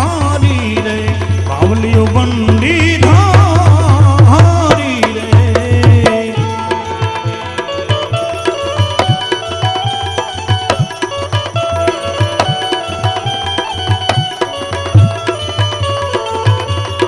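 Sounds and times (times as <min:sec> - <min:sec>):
hand drums beating: 0:00.0 - 0:17.0.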